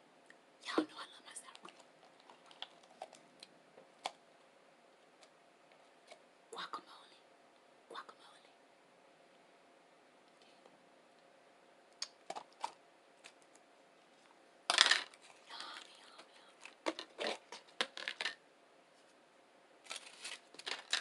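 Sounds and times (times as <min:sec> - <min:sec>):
food being eaten and handled: 0:01.5 - 0:04.2, 0:12.0 - 0:18.4
wrapper crackle: 0:19.8 - 0:21.0.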